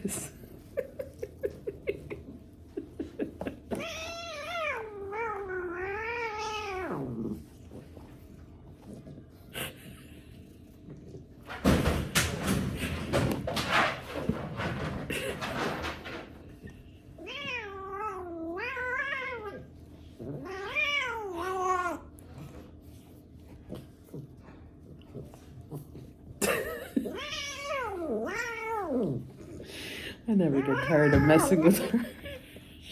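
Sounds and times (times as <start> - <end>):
cat meowing: 20.4 - 22.0, 30.6 - 31.8.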